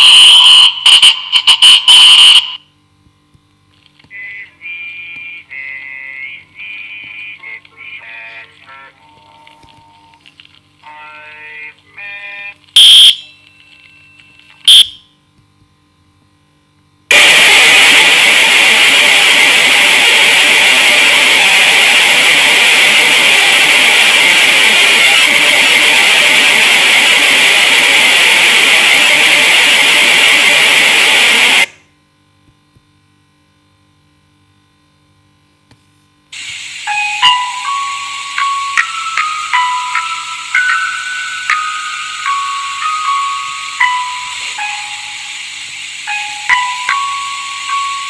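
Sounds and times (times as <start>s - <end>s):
harsh alarm blare: 0.0s - 2.6s, 4.2s - 10.0s, 10.9s - 13.4s, 14.7s - 15.0s, 17.1s - 31.7s, 36.4s - 48.0s
high-pitched alarm beeps: 0.0s - 2.6s, 12.8s - 13.4s, 14.7s - 15.0s, 36.8s - 48.0s.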